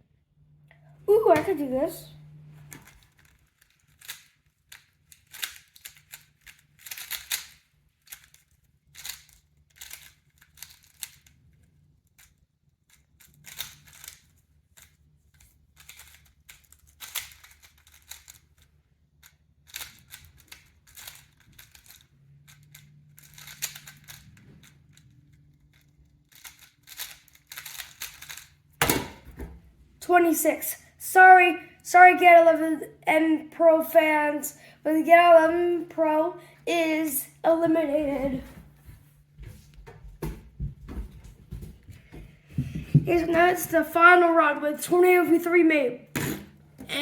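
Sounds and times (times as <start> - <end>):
puzzle cube clicking: 2.8 - 11.3, 12.9 - 18.6, 19.6 - 24.3, 25.7 - 28.5.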